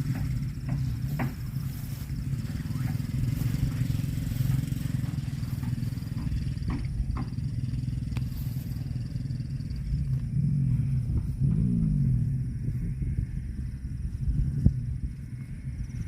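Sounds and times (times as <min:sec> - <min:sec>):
engine rumbling: 0:00.0 - 0:16.0
low falling tone: 0:09.7 - 0:15.9.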